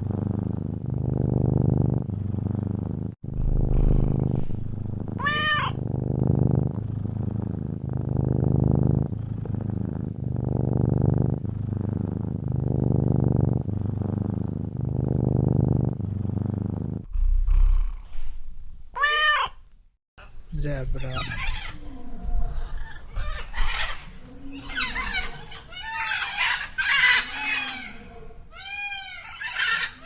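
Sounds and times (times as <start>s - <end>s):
cat purring: 0.0s - 19.7s
cat meowing: 5.2s - 5.8s, 18.9s - 19.6s.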